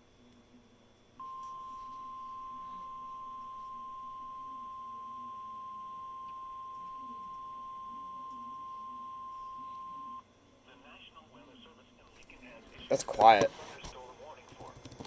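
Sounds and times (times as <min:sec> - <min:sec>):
steady electronic alarm tone: 0:01.2 - 0:10.2.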